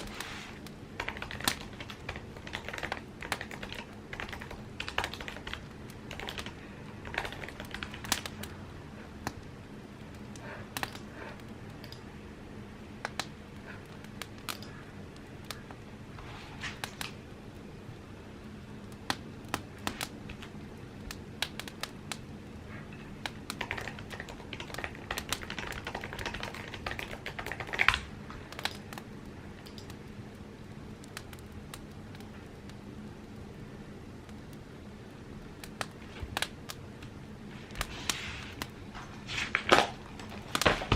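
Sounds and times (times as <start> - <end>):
typing on keyboard: 1.0 - 8.5, 23.2 - 28.9.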